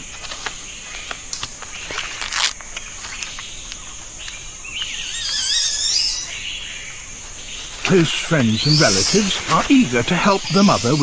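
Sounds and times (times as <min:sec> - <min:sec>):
small clicks and rustles: 0:00.0 - 0:04.9
high-pitched insect drone: 0:03.0 - 0:11.0
bird warbling call: 0:04.8 - 0:07.0, 0:07.6 - 0:11.0.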